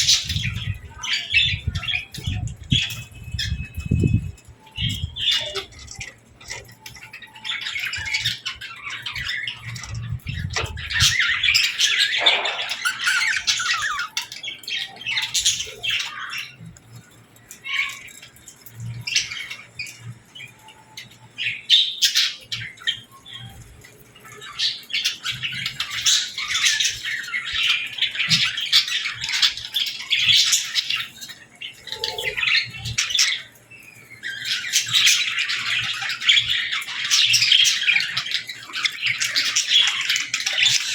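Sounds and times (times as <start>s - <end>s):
budgies and lovebirds chirping: 0.0s - 40.9s.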